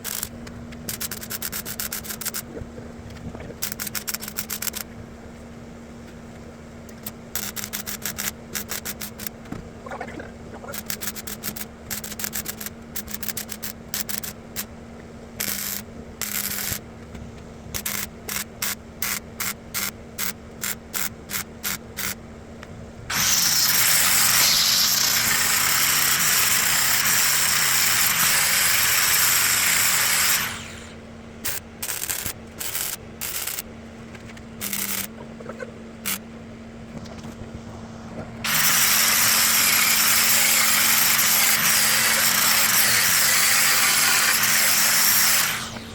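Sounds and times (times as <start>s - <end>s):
power tool on car body metal: 23.1s - 31.0s, 38.4s - 45.9s.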